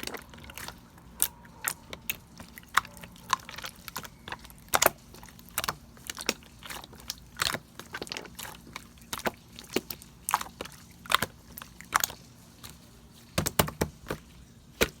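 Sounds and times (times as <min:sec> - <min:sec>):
slime squeezed wet pops: 0:13.4 - 0:14.2.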